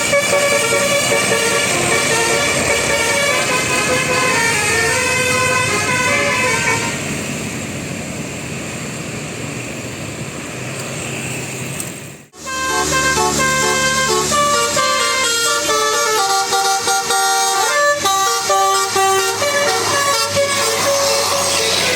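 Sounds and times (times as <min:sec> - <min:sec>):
bus musical air horn tune: 0:00.0 - 0:07.0, 0:12.4 - 0:21.9
engine drone: 0:00.0 - 0:21.9
traffic noise: 0:00.0 - 0:21.9.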